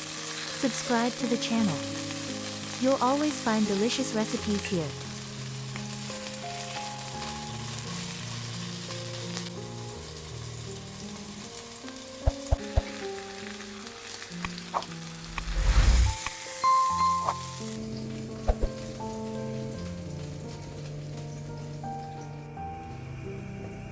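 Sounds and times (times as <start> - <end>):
food sizzling in a frying pan: 0.0 - 23.1.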